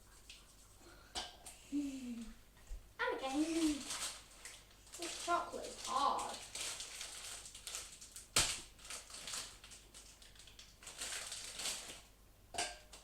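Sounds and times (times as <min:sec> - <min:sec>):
chocolate crunching and snapping: 0:05.9 - 0:12.0.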